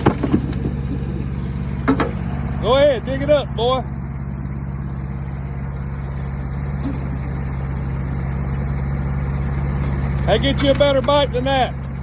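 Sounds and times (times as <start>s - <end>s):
excavator engine running: 0.0s - 12.0s.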